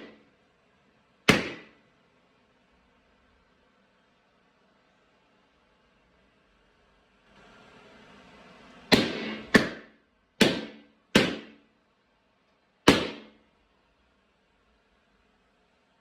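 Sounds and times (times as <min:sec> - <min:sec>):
faint steady hiss: 0:00.0 - 0:08.9.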